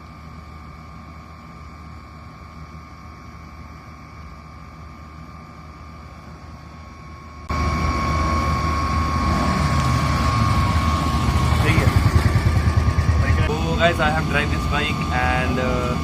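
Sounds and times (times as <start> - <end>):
motorcycle engine running: 9.2 - 15.0.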